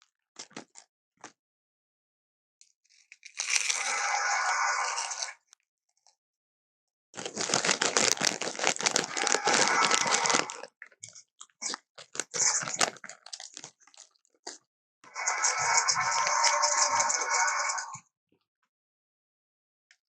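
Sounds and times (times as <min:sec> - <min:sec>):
crunching and crinkling: 0:00.4 - 0:01.4, 0:02.9 - 0:04.2, 0:07.2 - 0:17.4.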